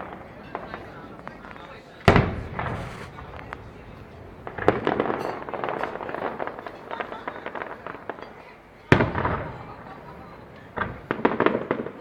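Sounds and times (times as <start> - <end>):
firework crackle: 0.0 - 12.0
firework bang: 2.0 - 8.3, 8.9 - 10.0, 10.6 - 12.0.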